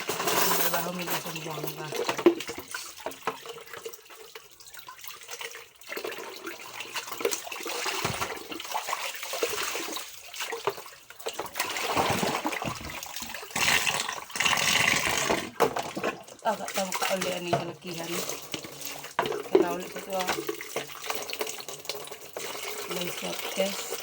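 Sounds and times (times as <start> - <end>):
dishes clicking and knocking: 0.0 - 3.4, 14.8 - 16.4, 17.2 - 22.1
tap water splashing in a sink: 0.0 - 24.0.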